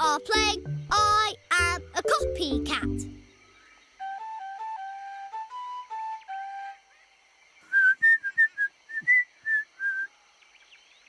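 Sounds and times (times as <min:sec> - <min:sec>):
flute-like pipe playing a tune: 0:04.0 - 0:06.9.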